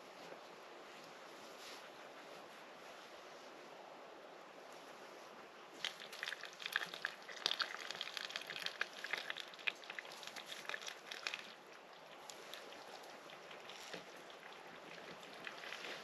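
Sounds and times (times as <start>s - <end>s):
campfire crackling and popping: 5.8s - 16.0s.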